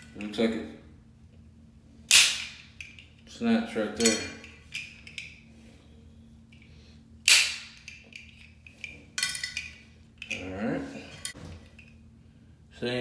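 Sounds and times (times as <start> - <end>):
plastic part snapping: 7.3 - 8.0.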